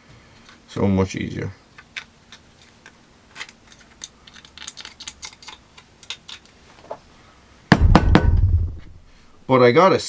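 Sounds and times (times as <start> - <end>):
light clicks and scrapes of tools: 1.7 - 6.9
loud clunk: 7.7 - 9.0.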